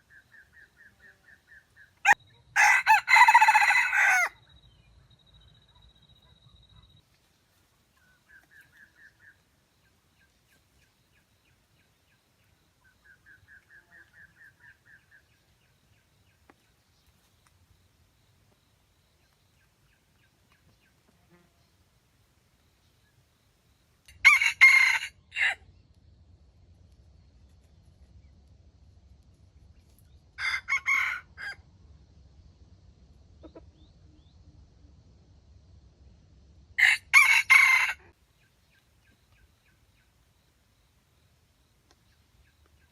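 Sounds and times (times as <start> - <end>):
bird chirping: 0.0 - 2.6, 4.4 - 24.1, 38.2 - 42.9
rooster crowing: 2.0 - 4.4, 24.2 - 25.6, 30.4 - 31.6, 36.8 - 38.2.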